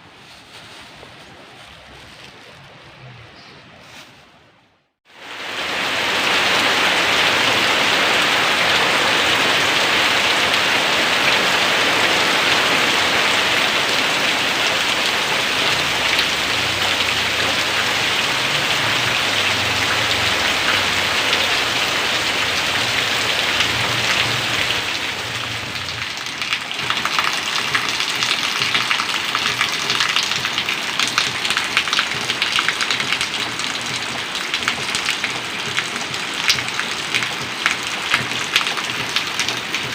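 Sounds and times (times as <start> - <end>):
heavy rain pouring: 5.0 - 39.9
raindrops ticking: 15.7 - 39.9.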